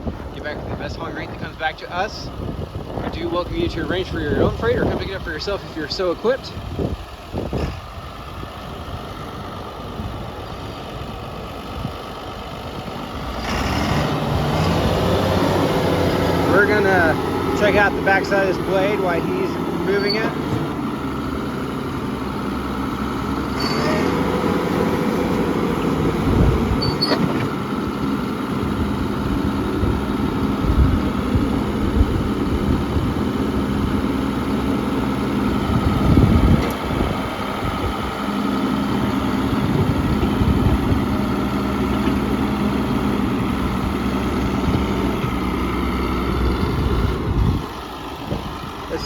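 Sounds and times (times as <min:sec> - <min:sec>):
bulldozer diesel engine running: 0:00.0 - 0:49.0
high squeal: 0:19.9 - 0:20.4, 0:23.6 - 0:24.2, 0:26.8 - 0:27.2.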